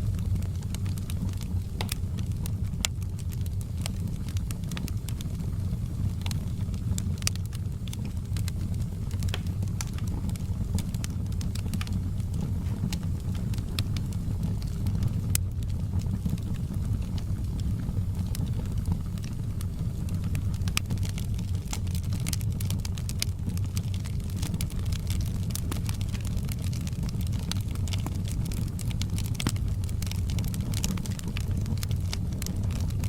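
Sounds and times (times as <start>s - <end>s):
wood fire crackling: 0.0s - 33.0s.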